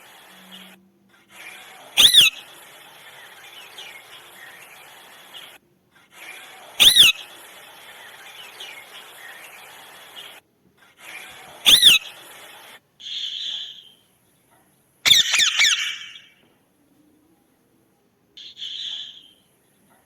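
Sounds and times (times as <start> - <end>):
faint chirping: 0.0 - 10.4, 11.0 - 20.0
parrot calls: 1.4 - 4.8, 6.8 - 7.5, 11.1 - 14.0, 15.0 - 16.4.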